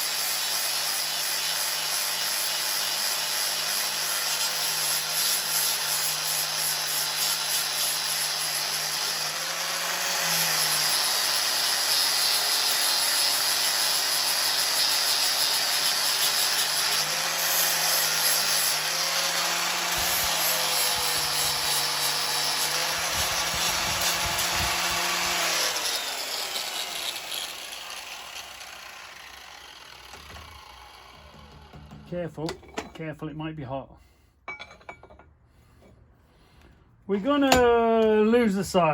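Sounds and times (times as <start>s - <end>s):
electric grinder grinding steel: 0.0s - 32.2s
grinder spinning down: 2.3s - 32.1s.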